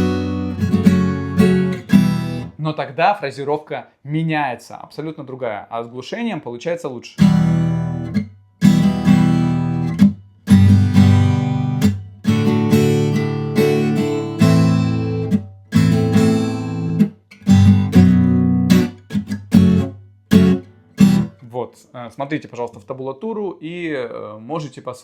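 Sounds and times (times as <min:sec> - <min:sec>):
acoustic guitar strumming: 0:00.0 - 0:02.6, 0:07.2 - 0:21.4.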